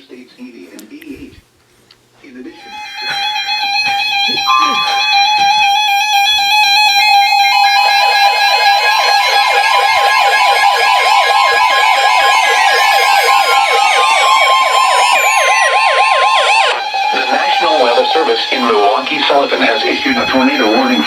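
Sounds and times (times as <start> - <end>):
warbling siren-style alarm: 2.8 - 21.0
buzzy digital header tones: 4.2 - 6.2, 7.3 - 21.0
steady high alert tone: 4.3 - 6.1, 7.5 - 21.0.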